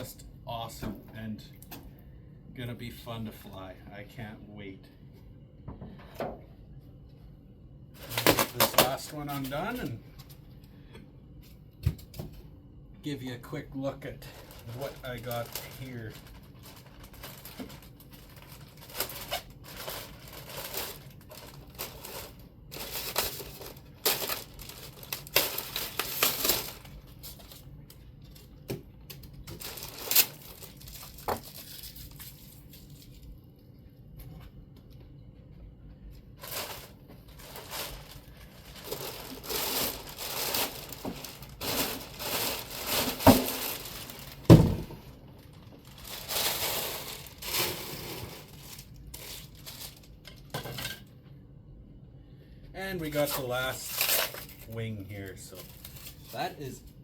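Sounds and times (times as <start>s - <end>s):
packing material crinkling and tearing: 8.0s - 10.0s, 14.0s - 28.6s, 29.2s - 33.4s, 36.4s - 50.5s, 53.1s - 56.8s.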